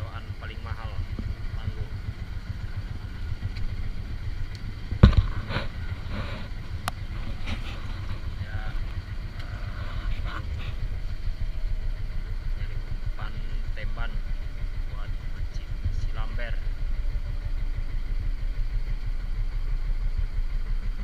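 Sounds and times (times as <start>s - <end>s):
boat engine rumbling: 0.0s - 21.0s
sharp knock: 5.0s - 5.6s.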